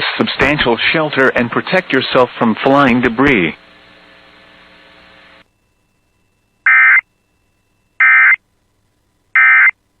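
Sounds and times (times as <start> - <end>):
electronic data bursts: 6.6 - 7.0.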